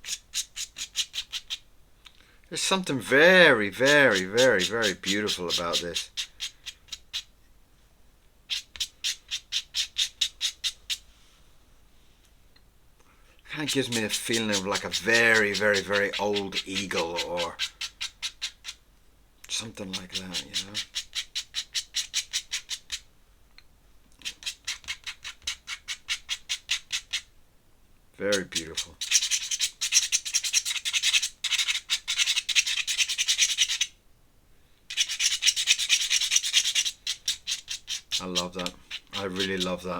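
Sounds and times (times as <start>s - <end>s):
pen nib scratching paper: 0.0s - 1.6s, 3.8s - 7.3s, 8.5s - 11.0s, 13.6s - 18.8s, 19.6s - 23.0s, 24.2s - 27.2s, 28.3s - 33.9s, 34.9s - 39.8s.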